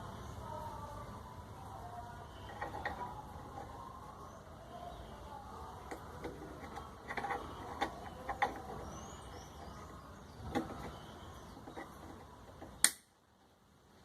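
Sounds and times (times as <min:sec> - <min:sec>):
sharp loud click: 0:12.8 - 0:13.1.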